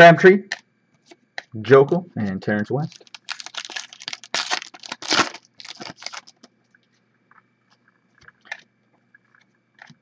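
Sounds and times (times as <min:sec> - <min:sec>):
foil wrapper crinkling and tearing: 0:02.8 - 0:06.5.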